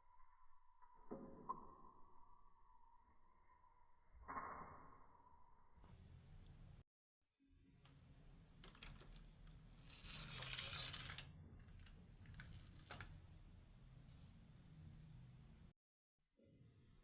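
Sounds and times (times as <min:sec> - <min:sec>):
marbles rolling down wooden run: 0:08.6 - 0:13.3.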